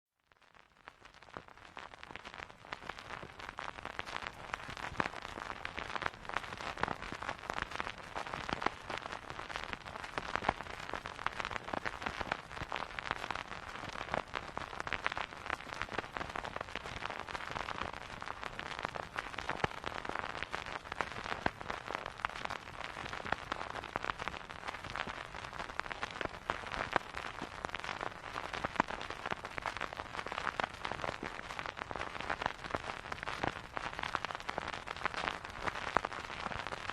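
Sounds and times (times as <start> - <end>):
vinyl crackles and pops: 0.1 - 36.9.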